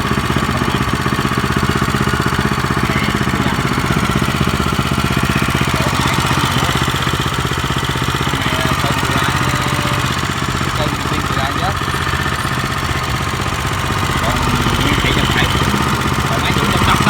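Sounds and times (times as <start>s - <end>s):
tiller engine running: 0.0s - 17.0s.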